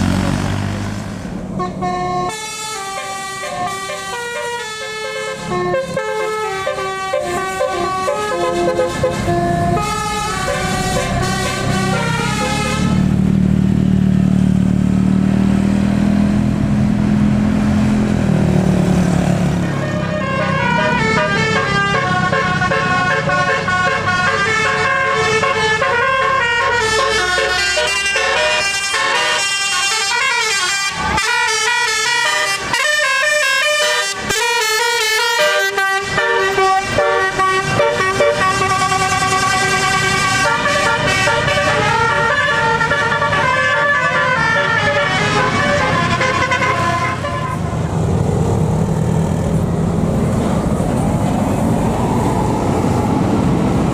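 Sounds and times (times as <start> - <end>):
musical air horn playing a tune: 1.6 - 13.1, 19.7 - 47.7.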